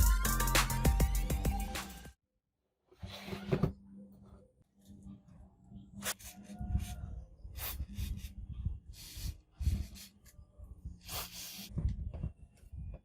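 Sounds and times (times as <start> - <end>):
short hissing bursts: 9.0 - 10.1.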